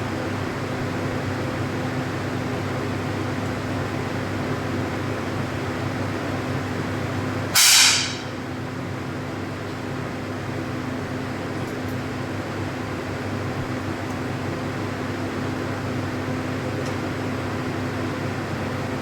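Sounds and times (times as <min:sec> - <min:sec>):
ventilation hum: 0:00.0 - 0:19.0
air pistol shot: 0:07.6 - 0:08.4.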